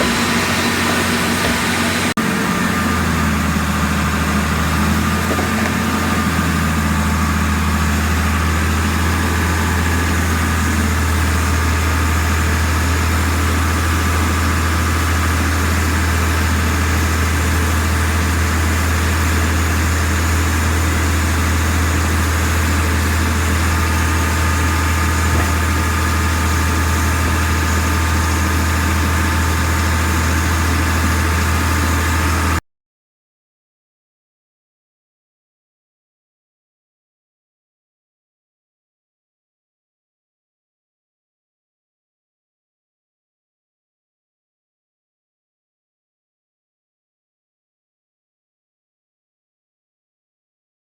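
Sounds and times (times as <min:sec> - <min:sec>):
low machine drone: 0:00.0 - 0:32.6.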